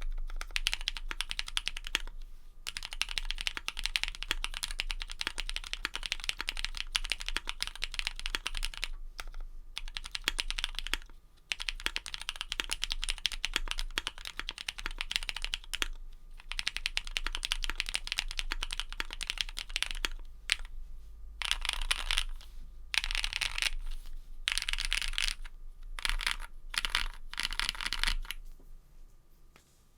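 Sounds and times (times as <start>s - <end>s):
mechanical keyboard typing: 0.0s - 2.1s, 2.7s - 20.7s, 21.4s - 22.4s, 23.0s - 28.4s.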